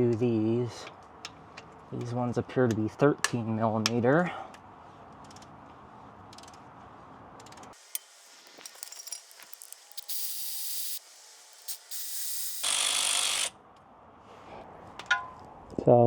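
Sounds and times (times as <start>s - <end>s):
wrench ratcheting and clicks: 7.4s - 13.5s
power tool whirring: 7.8s - 13.6s.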